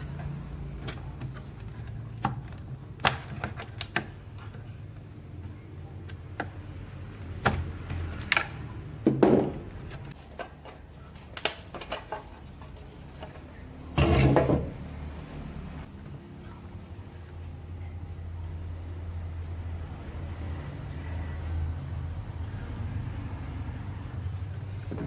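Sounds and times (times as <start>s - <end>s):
low steady hum: 0.0s - 25.0s
objects clattering: 7.4s - 14.8s
hard objects knocking: 9.0s - 10.8s.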